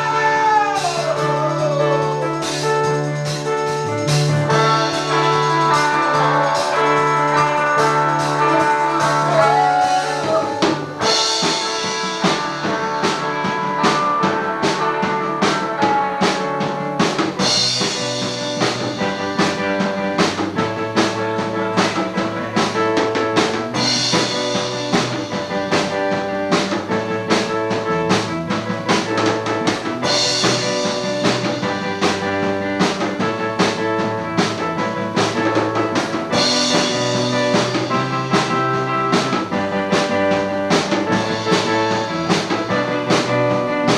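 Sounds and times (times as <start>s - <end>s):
drum kit beat: 0.0s - 43.9s
sustained rock chords: 0.0s - 43.9s.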